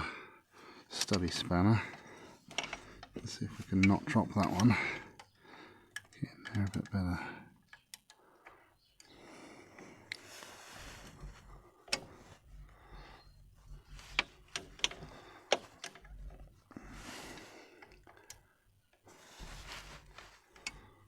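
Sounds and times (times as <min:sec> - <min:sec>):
spanner clicking on metal: 0:01.0 - 0:05.3, 0:05.9 - 0:07.0.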